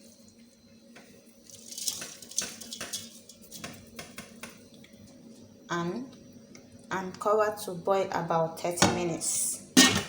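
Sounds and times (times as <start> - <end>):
seasoning hissing into a pot: 1.3 - 4.0.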